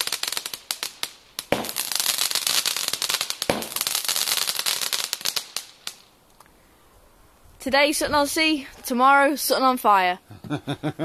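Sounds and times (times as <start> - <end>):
fireworks bangs: 0.0 - 6.0
fireworks crackling: 0.0 - 6.2.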